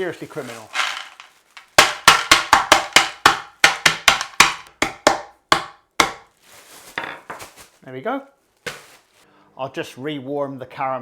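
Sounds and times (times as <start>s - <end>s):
chocolate eggs being smashed: 0.4s - 6.3s.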